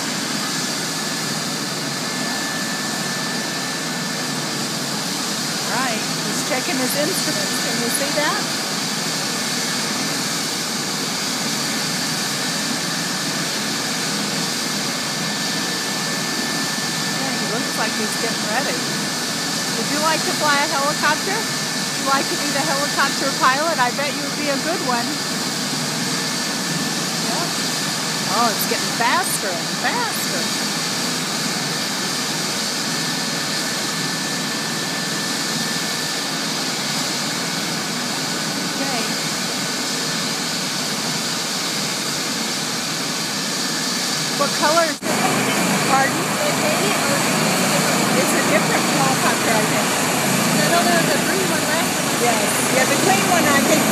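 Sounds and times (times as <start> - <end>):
faint high whine: 0.0 - 39.6
helicopter engine and rotor rush: 0.0 - 53.9.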